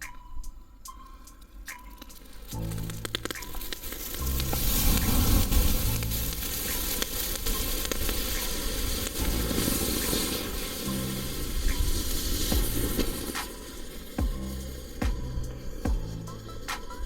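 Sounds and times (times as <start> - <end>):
firework crackles: 1.7 - 17.0
firework fountain hissing: 2.1 - 17.0.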